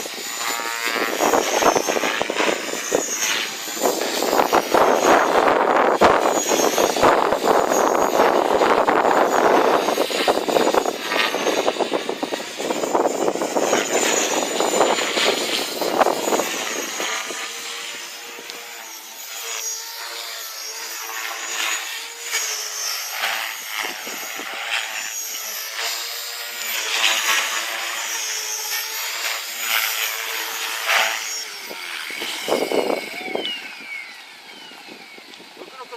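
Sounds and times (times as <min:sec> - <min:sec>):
wind rushing over microphone: 0:00.0 - 0:18.8, 0:23.1 - 0:25.1, 0:29.8 - 0:35.9
wavering pitched hum: 0:00.0 - 0:35.9.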